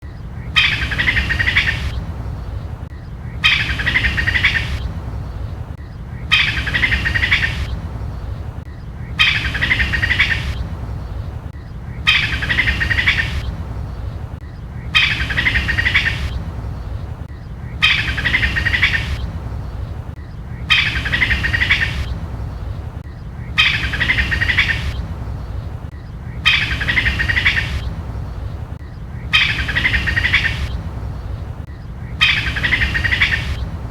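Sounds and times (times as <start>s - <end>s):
steady low hum: 0.0s - 33.9s
squirrel chattering: 0.6s - 2.0s, 3.3s - 5.5s, 6.2s - 7.8s, 9.0s - 10.7s, 11.9s - 13.6s, 14.8s - 17.0s, 17.6s - 19.4s, 20.5s - 22.2s, 23.4s - 30.8s, 32.0s - 33.7s.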